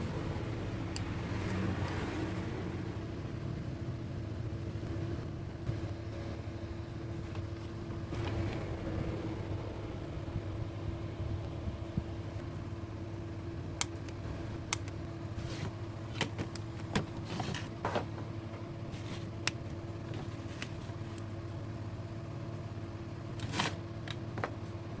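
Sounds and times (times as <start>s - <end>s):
low electrical hum: 0.0s - 25.0s.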